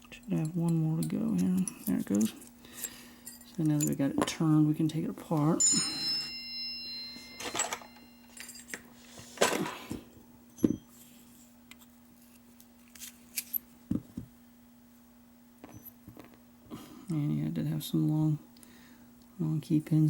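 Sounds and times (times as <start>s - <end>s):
small metal clicks and knocks: 0.1s - 4.4s.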